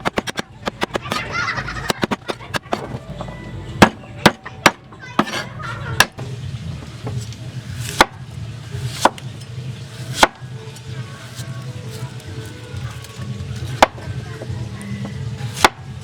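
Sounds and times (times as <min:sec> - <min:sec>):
knife chopping on cutting board: 0:00.0 - 0:01.3, 0:01.9 - 0:03.0, 0:03.8 - 0:06.1.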